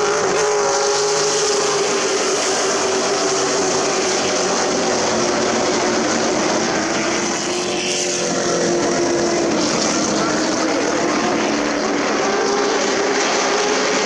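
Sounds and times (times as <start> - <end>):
race engines at speed: 0.0 - 14.0.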